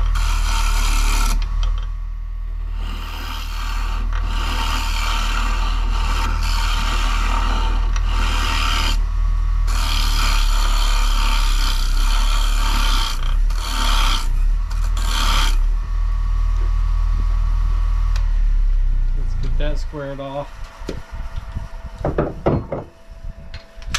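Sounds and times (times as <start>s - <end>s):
turning tool scraping wood: 0.0s - 1.8s, 2.6s - 9.0s, 9.6s - 15.7s
wood lathe humming: 0.0s - 19.8s.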